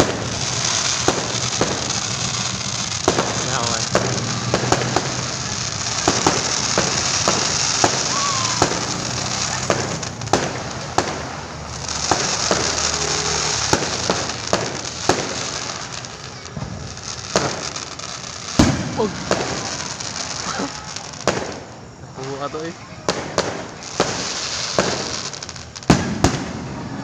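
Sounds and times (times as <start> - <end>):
fireworks bangs and pops: 0.0 - 27.0
fireworks crackling hiss: 0.0 - 27.0.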